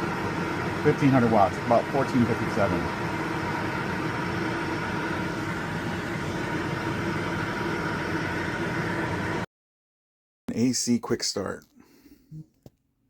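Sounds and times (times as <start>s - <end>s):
air conditioner drone: 0.0s - 9.5s.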